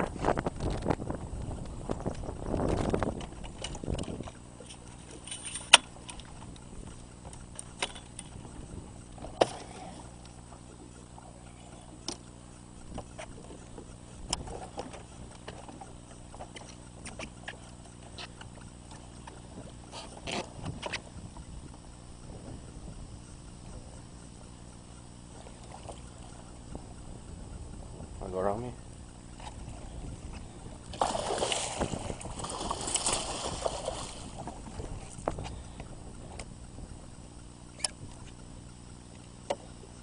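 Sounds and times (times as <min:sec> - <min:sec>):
boat motor humming: 0:00.0 - 0:40.0.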